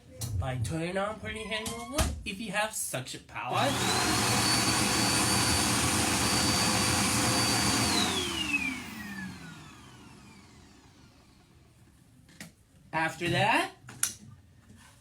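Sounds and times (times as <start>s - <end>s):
vacuum cleaner motor whining: 3.5s - 11.5s.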